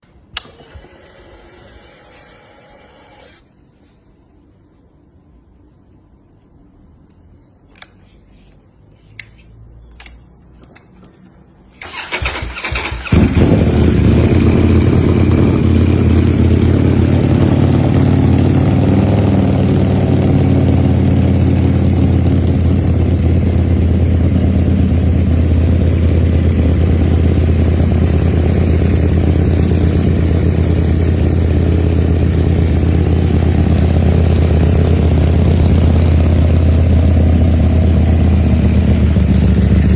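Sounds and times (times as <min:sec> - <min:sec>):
motorcycle starter cranking: 0:11.7 - 0:14.0
motorcycle engine idling loudly: 0:13.1 - 0:39.9.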